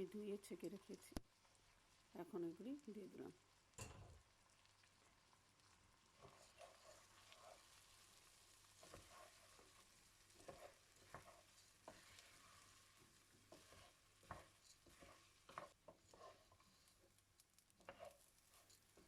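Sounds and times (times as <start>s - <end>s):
rice sizzling in a pan: 0.0s - 19.0s
utensil scraping and knocking pan: 8.8s - 9.7s, 10.3s - 17.2s, 17.8s - 19.0s.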